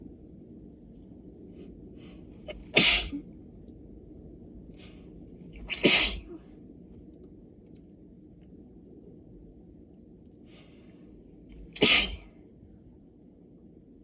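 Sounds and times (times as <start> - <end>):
person sneezing: 2.5 - 3.2, 5.7 - 6.4, 11.7 - 12.2.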